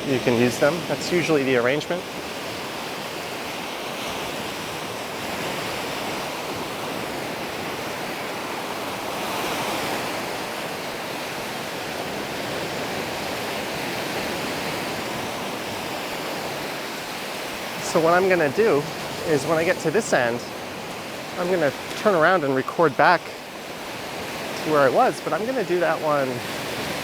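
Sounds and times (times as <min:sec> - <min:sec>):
surf washing onto beach: 0:00.0 - 0:27.0.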